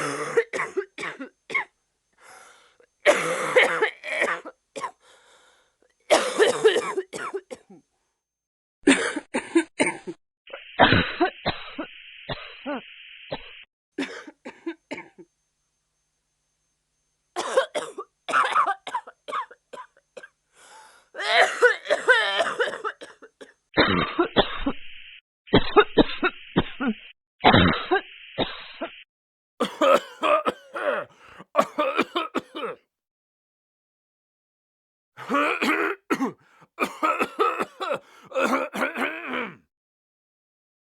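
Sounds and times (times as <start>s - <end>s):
person coughing: 0.0s - 1.3s, 3.1s - 4.9s, 6.1s - 7.8s, 29.6s - 32.8s, 35.2s - 39.6s.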